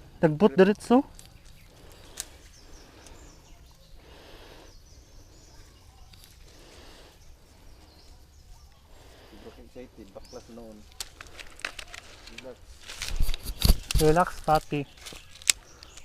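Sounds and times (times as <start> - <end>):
faint bird chirps: 1.1 - 11.0.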